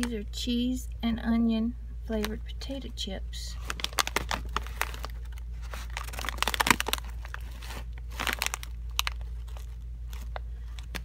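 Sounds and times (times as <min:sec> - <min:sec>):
chip bag crinkling: 0:03.6 - 0:11.0.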